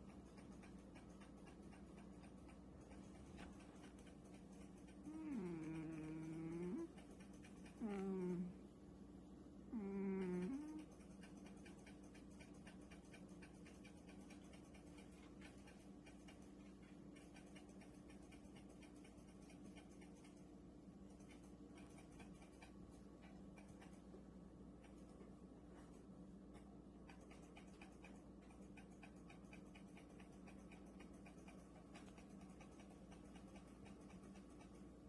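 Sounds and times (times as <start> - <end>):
faint rapid ticking: 0.0 - 35.0
low steady hum: 0.0 - 35.0
cat vocal sound: 4.9 - 8.6, 9.7 - 11.3.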